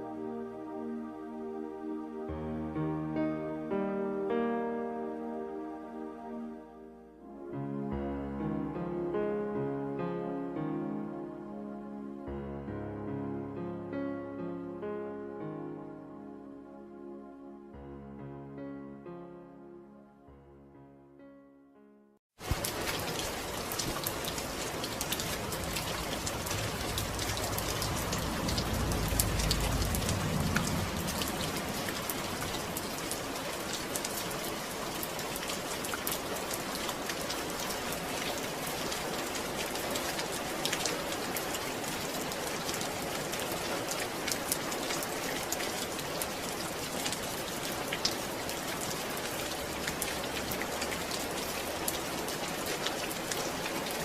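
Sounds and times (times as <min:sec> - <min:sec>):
steady rain falling: 0:22.4 - 0:54.0.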